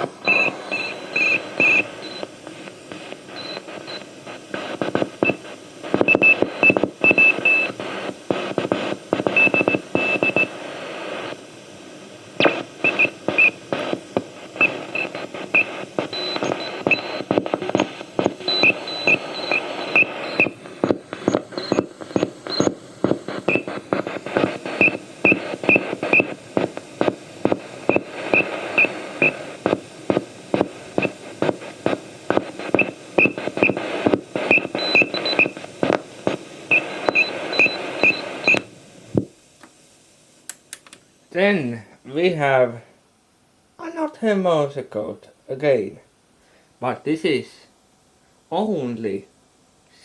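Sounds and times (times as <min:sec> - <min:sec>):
radio static hiss: 0:00.0 - 0:43.0, 0:43.7 - 0:50.0
morse code beeps: 0:00.2 - 0:02.3, 0:03.4 - 0:04.1, 0:06.0 - 0:07.8, 0:09.3 - 0:10.6, 0:12.4 - 0:13.6, 0:14.5 - 0:26.4, 0:27.6 - 0:29.6, 0:32.5 - 0:35.7, 0:36.7 - 0:38.7.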